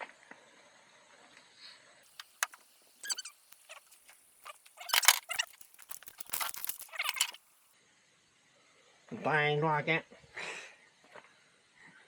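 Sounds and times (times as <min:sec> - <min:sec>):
spray foam sputtering and hissing: 0:02.1 - 0:07.6.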